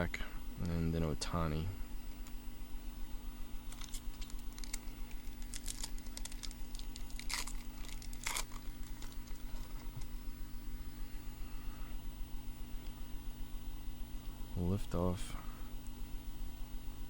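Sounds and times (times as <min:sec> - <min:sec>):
cards and foil wrapper rustling: 0:03.7 - 0:10.1.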